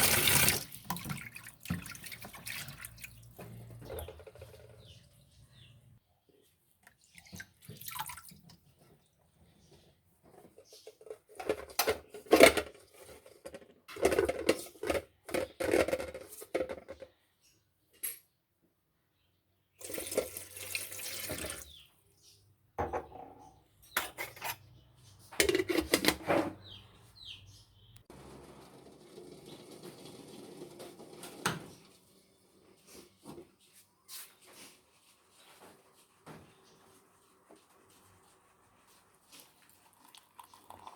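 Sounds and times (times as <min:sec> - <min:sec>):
tap water running: 0:00.0 - 0:04.3, 0:07.2 - 0:08.5, 0:19.8 - 0:21.8, 0:28.1 - 0:32.0
pot and utensils clattering: 0:10.6 - 0:17.0, 0:22.8 - 0:24.6, 0:25.4 - 0:26.6.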